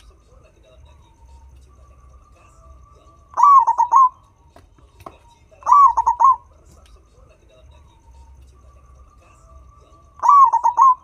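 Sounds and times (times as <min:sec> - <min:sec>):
turtledove cooing: 0:03.4 - 0:04.2, 0:05.6 - 0:06.5, 0:10.2 - 0:11.0.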